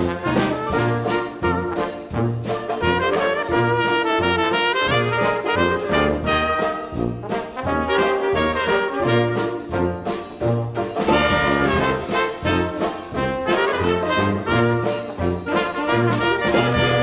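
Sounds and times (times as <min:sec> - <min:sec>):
jazzy big band music: 0:00.0 - 0:17.0.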